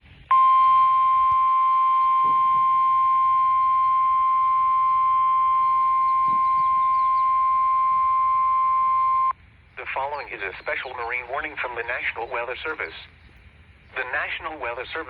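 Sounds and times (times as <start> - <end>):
steady piercing alarm beep: 0.3 - 9.4.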